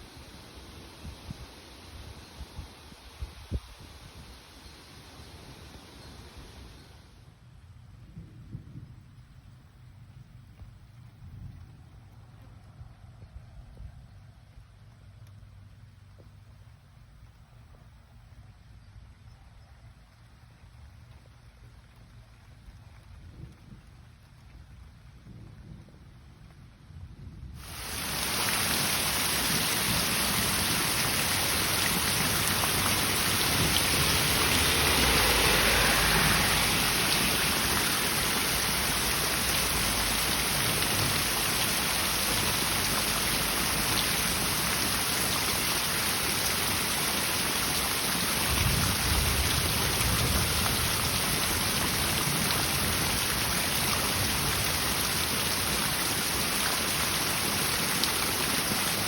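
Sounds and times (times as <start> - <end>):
heavy rain: 27.6 - 59.0
low rumbles: 30.2 - 43.7.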